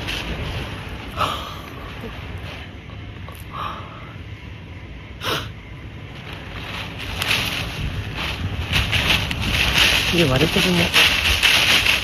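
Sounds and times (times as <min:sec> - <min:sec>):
wind buffeting microphone: 0:04.3 - 0:12.0.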